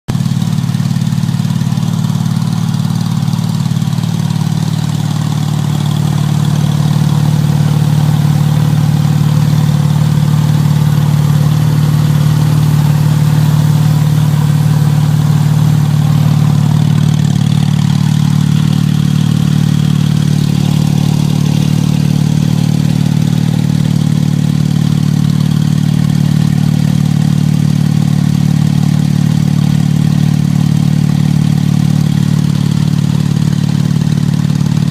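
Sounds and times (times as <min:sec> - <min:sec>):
car engine idling: 0:00.0 - 0:34.9.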